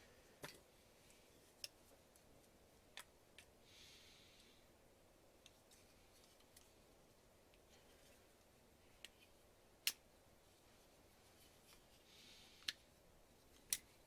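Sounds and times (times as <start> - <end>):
soft rustle: 5.4 - 9.5, 10.4 - 14.0.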